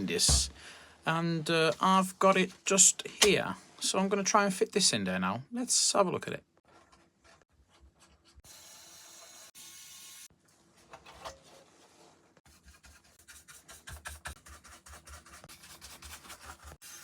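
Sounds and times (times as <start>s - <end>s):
rubbing and scratching of case: 10.8s - 16.8s.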